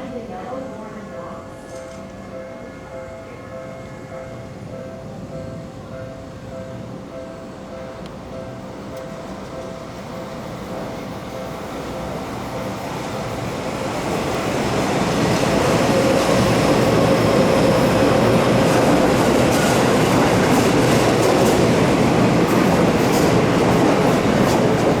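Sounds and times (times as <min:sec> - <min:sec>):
electric train running: 0:07.1 - 0:25.0.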